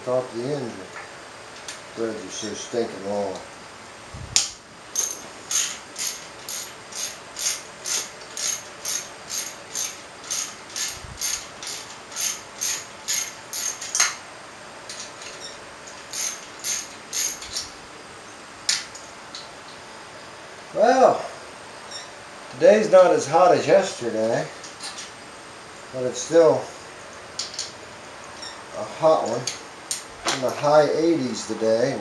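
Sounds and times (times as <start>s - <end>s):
ratchet wrench clicking: 5.0s - 14.2s, 15.9s - 17.7s.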